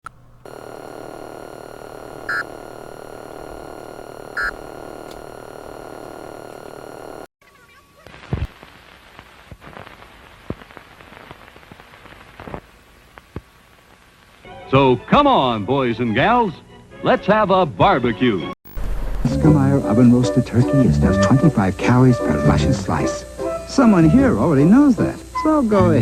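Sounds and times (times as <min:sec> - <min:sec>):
crackling static: 0:00.0 - 0:14.5, 0:18.7 - 0:26.0
steady electronic buzz: 0:00.3 - 0:07.3.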